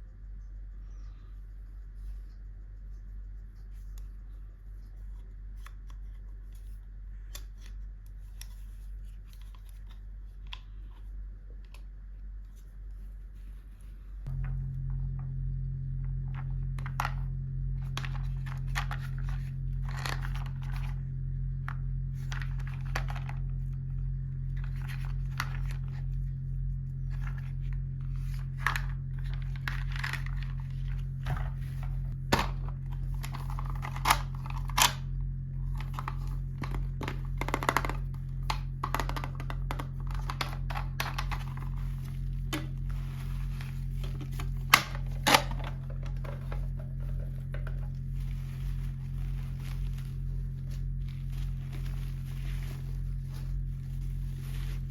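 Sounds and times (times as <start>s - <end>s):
steady low hum: 0.0s - 54.9s
packaging rustling: 17.8s - 21.0s, 27.1s - 54.9s.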